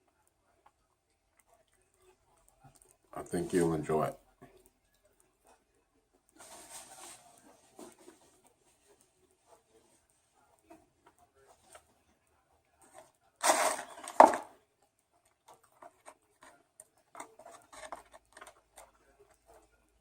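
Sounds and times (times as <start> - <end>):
chewing and mouth clicks: 0.0 - 3.1.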